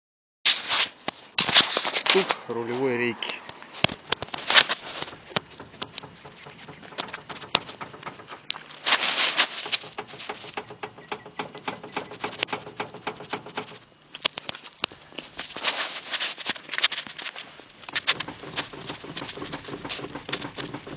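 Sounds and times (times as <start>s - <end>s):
steering rack knocking: 4.0s - 8.7s, 9.6s - 13.8s, 17.9s - 20.9s.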